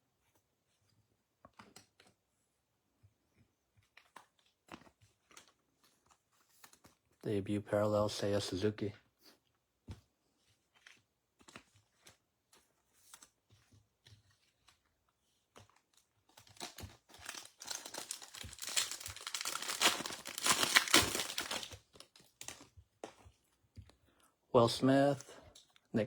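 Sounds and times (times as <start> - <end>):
cards being handled: 15.6 - 23.4
card pack wrapper tearing: 16.5 - 22.7.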